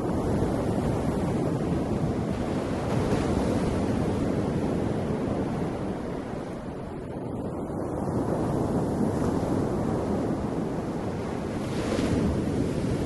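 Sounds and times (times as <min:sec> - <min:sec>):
ocean waves breaking: 0:00.0 - 0:13.0.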